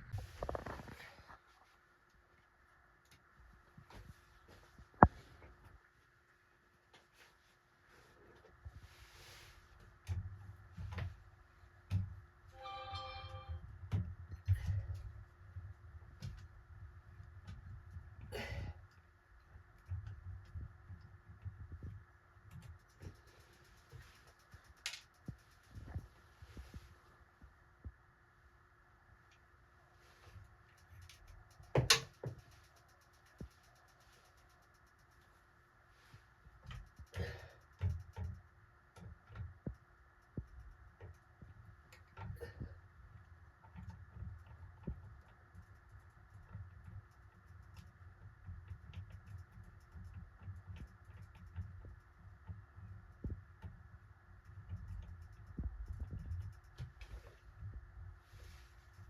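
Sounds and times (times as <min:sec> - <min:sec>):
clicks and taps of tools: 0:31.0 - 0:33.6.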